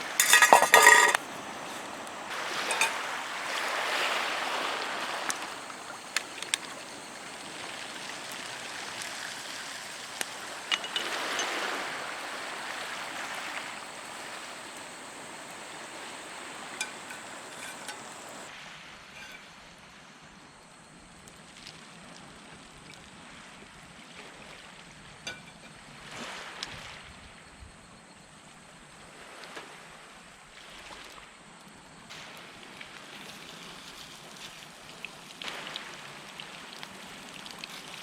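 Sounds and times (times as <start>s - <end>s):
small waves washing onto beach: 0.0s - 18.8s, 32.1s - 38.0s.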